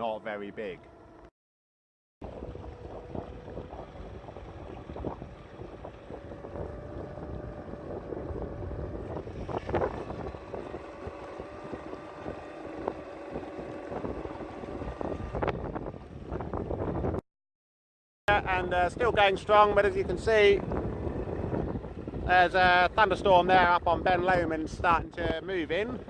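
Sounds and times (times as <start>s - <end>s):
electric motor tone: 2.2s - 16.3s
wind on microphone: 2.2s - 17.2s, 18.3s - 26.0s.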